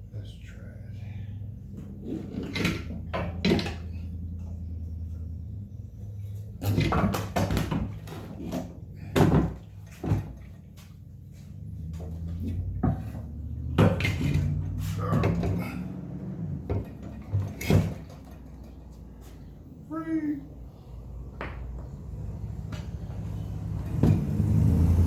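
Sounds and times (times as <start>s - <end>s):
metal clunks and scrapes: 1.6s - 4.6s, 6.2s - 19.5s.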